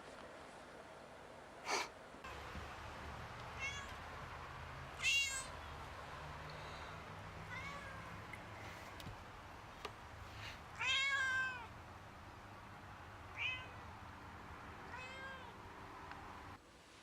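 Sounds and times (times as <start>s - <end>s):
cats meowing: 3.6s - 4.1s, 5.0s - 5.6s, 7.4s - 8.2s, 10.7s - 11.7s, 13.3s - 13.8s, 14.9s - 15.6s.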